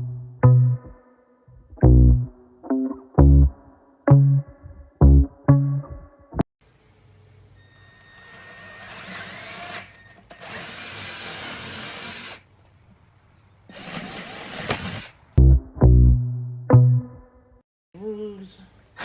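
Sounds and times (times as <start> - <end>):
power tool cutting through panel: 13.7 - 15.1.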